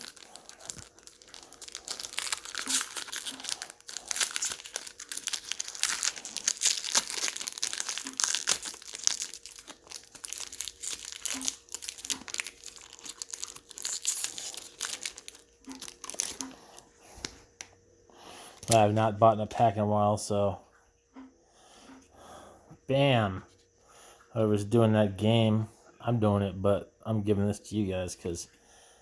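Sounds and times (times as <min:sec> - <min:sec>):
foil wrapper crinkling: 0:00.0 - 0:17.3.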